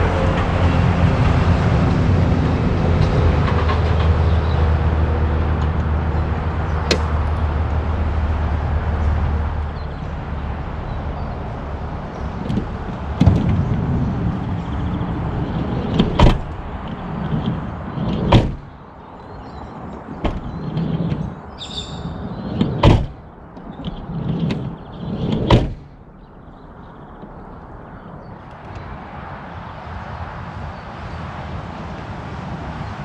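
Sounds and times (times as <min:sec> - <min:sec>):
van sliding door rolling: 0:00.0 - 0:29.1
door slamming shut: 0:12.4 - 0:18.8, 0:20.1 - 0:21.3, 0:22.0 - 0:26.0.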